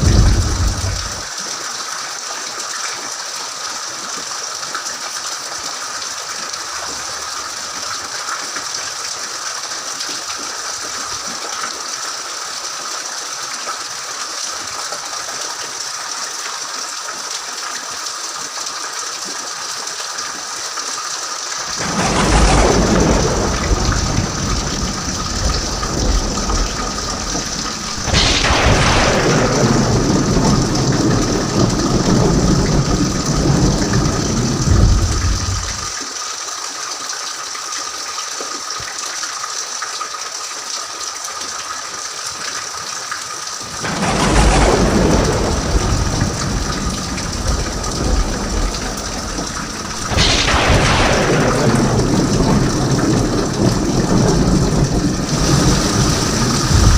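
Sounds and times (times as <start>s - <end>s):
thunderclaps with low rumble: 0.0s - 1.3s, 21.7s - 36.0s, 43.6s - 56.9s
steady rain falling: 0.0s - 56.9s.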